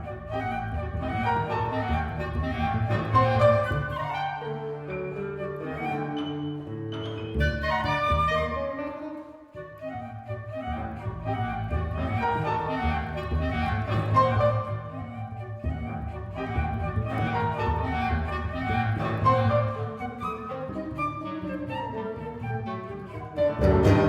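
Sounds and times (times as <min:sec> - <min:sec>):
chamber music ensemble: 0:00.0 - 0:24.0.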